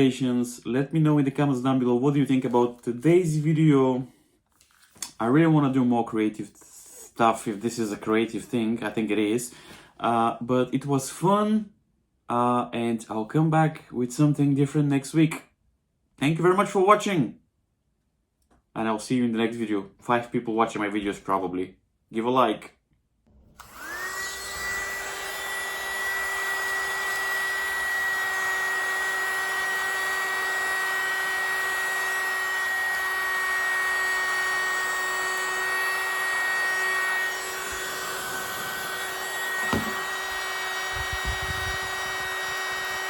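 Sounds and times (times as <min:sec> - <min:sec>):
small vacuum cleaner whine: 0:23.3 - 0:43.0.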